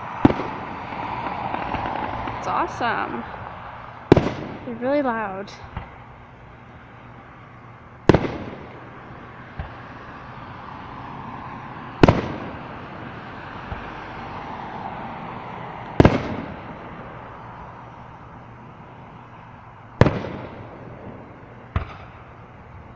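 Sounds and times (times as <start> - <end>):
fireworks booming: 0.0 - 7.0, 8.0 - 10.1, 11.8 - 13.9, 15.8 - 17.1, 20.0 - 22.4
small firework pops: 0.2 - 0.6, 1.2 - 2.4, 4.1 - 4.6, 8.1 - 8.8, 9.5 - 9.8, 12.0 - 12.5, 20.0 - 20.6, 21.7 - 22.2.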